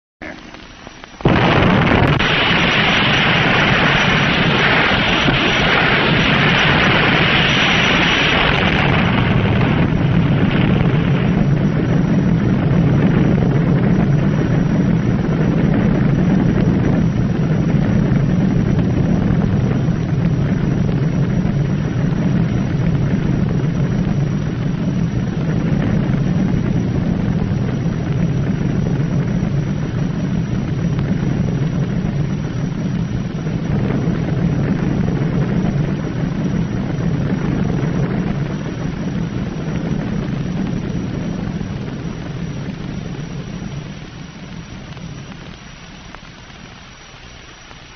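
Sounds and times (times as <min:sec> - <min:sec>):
deep rumble: 0:00.2 - 0:47.9
explosion hissing roar: 0:01.2 - 0:11.4.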